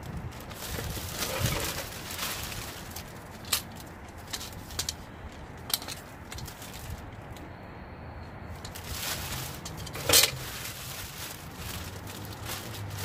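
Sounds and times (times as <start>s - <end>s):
bags rustling: 0.0s - 4.9s, 8.6s - 13.0s.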